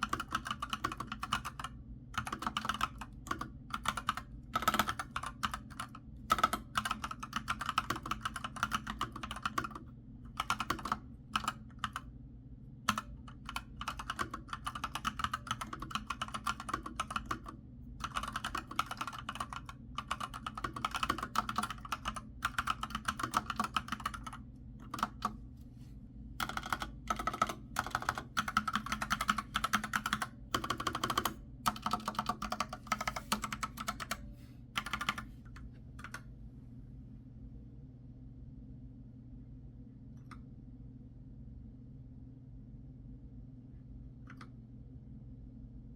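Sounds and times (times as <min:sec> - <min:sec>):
keyboard typing clicks: 0:00.0 - 0:12.0, 0:12.9 - 0:25.4, 0:26.4 - 0:34.2, 0:34.8 - 0:36.3, 0:44.3 - 0:44.5.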